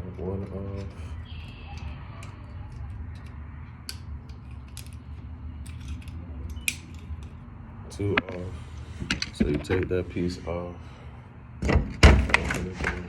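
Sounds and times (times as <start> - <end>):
steady low hum: 0.0 - 13.0
screwdriver clicks and creaks: 0.7 - 7.4.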